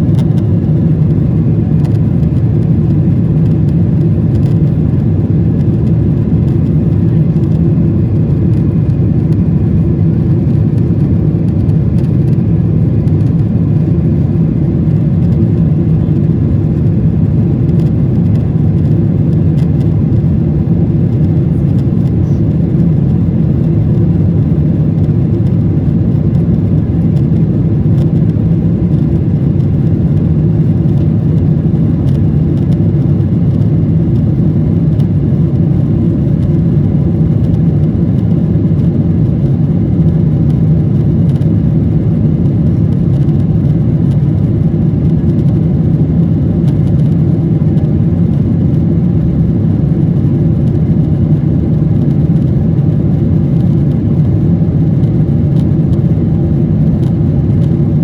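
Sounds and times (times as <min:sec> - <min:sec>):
airplane engines droning: 0:00.0 - 0:58.0.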